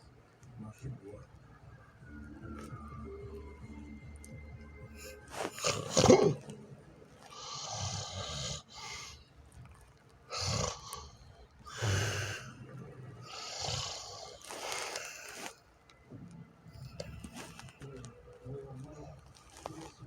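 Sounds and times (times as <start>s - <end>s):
person snoring: 5.0s - 6.5s, 7.2s - 9.2s, 10.3s - 15.6s
loud snort: 5.3s - 6.5s, 7.2s - 9.2s, 10.3s - 12.6s, 13.2s - 15.5s.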